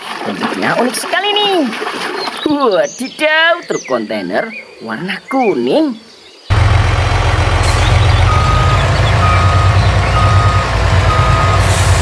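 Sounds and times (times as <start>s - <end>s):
truck engine rumble: 6.5s - 12.0s
truck reversing alarm beeping: 6.5s - 12.0s.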